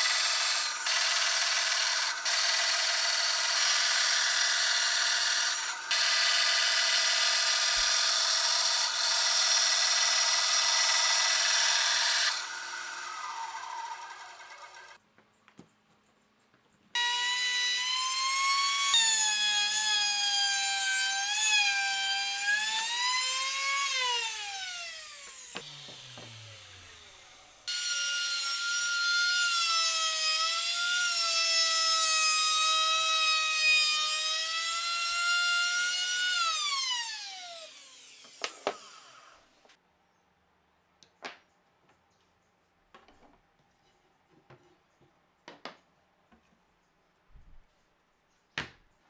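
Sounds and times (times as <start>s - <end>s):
circular saw cutting wood: 0.0s - 15.0s, 17.0s - 39.5s.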